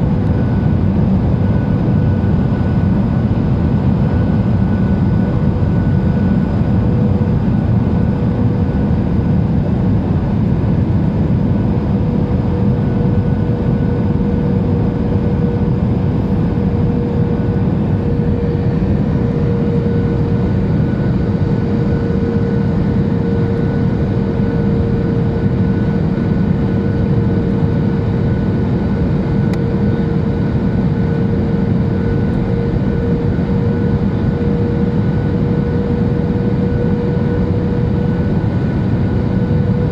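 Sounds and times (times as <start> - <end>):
airflow rushing in cabin: 0.0 - 39.9
jet engines droning: 0.0 - 39.9
steady hum: 0.0 - 39.9.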